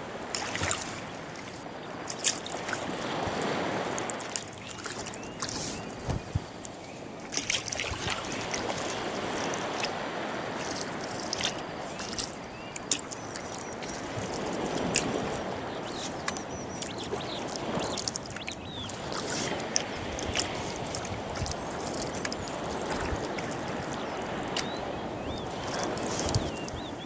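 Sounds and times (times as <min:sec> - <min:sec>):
oars splashing through water: 0:00.0 - 0:27.0
birds chirping: 0:04.5 - 0:07.1, 0:11.5 - 0:20.1, 0:21.9 - 0:27.0.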